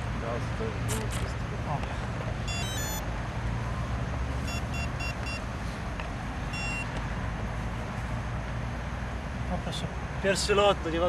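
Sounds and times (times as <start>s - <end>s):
electronic beeps: 2.5s - 3.0s, 4.5s - 5.4s, 6.5s - 6.9s.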